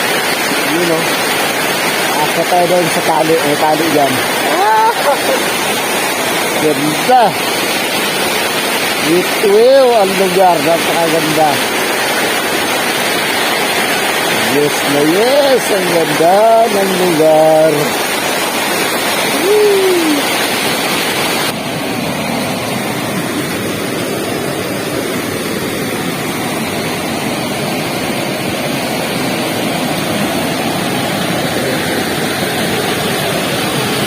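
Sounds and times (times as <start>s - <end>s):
waterfall rushing water: 0.0s - 34.0s
person shouting woo: 4.4s - 5.4s, 19.3s - 20.3s.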